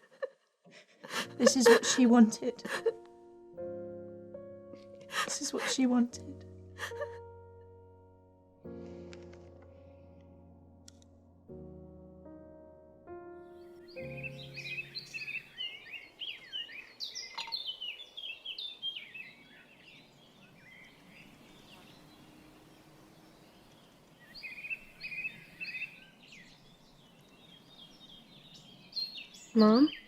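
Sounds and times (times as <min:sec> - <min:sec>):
songbirds chirping: 0:13.1 - 0:30.0
faint background hiss: 0:14.0 - 0:30.0.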